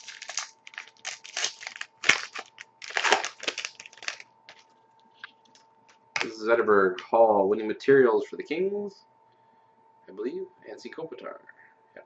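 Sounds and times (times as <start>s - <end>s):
card pack wrapper tearing: 0.0s - 4.6s.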